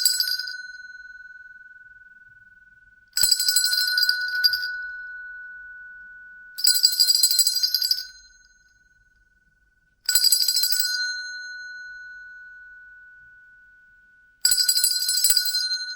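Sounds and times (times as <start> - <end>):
hand bell ringing: 3.2 - 5.2.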